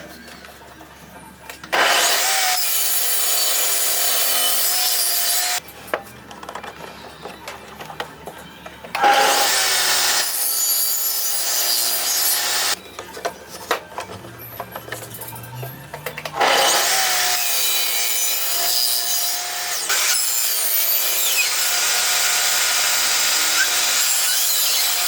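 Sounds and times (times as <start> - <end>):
power tool cutting wood: 1.7 - 5.6, 9.0 - 12.8, 16.4 - 25.0.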